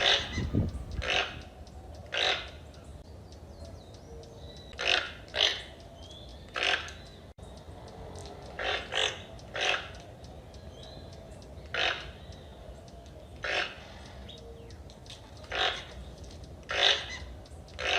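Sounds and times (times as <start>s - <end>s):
toucan croaking calls: 0.0s - 2.8s, 4.7s - 7.2s, 8.4s - 10.4s, 11.5s - 12.6s, 13.4s - 14.4s, 15.2s - 17.9s.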